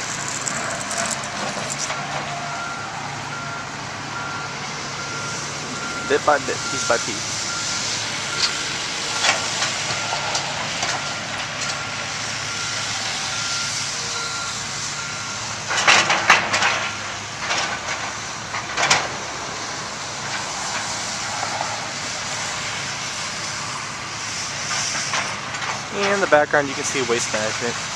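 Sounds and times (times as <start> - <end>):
diesel engines running: 0.0 - 27.9
backup alarm beeping: 1.9 - 9.3, 11.0 - 15.5.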